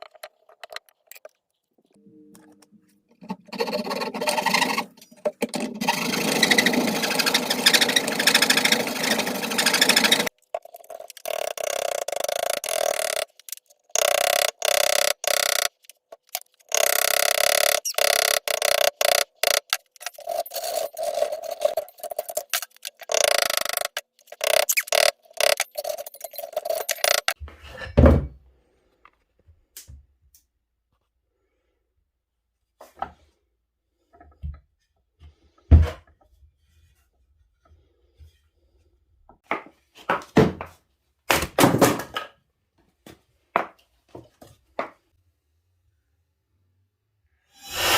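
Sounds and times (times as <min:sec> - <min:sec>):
power tool running: 0:05.8 - 0:10.3.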